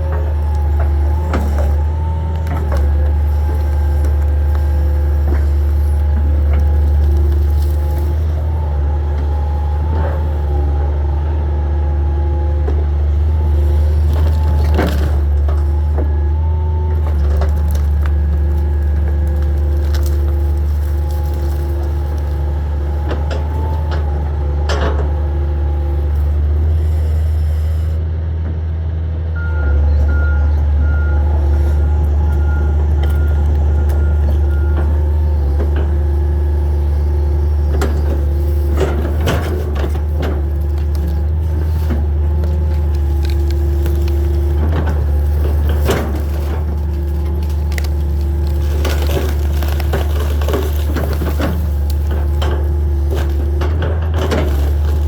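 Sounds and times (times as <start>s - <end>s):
excavator diesel engine running: 0.0s - 55.0s
wood and debris knocking: 17.0s - 24.1s, 37.8s - 55.0s.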